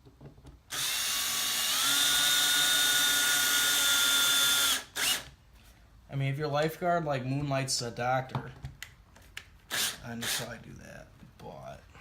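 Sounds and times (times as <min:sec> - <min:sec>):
power drill whining: 0:00.7 - 0:05.3.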